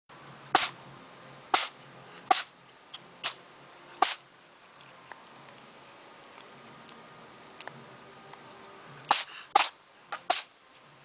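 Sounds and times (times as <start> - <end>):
cat sneezing: 0.6 - 0.8, 1.5 - 2.5, 3.2 - 3.4, 4.0 - 4.2, 9.1 - 10.5.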